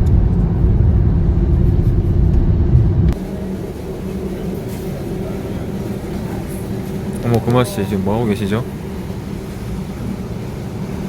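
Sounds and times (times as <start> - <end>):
car road noise rumble: 0.0 - 4.6
quieter even hum: 0.0 - 7.3.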